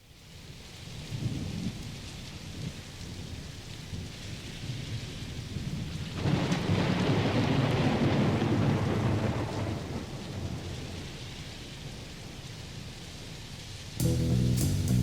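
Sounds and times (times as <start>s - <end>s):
heavy rain: 0.2s - 15.0s
rolling thunder: 6.1s - 11.0s.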